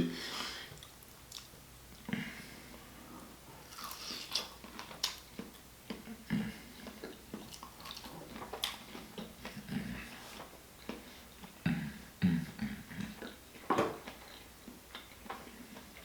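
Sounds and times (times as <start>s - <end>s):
chewing and mouth smacking: 0.8s - 1.5s, 3.7s - 6.2s, 6.8s - 11.6s.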